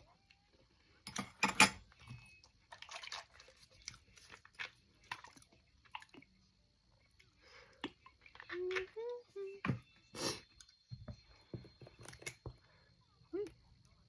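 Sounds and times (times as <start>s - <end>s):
wet chewing with mouth clicks: 2.8s - 9.2s.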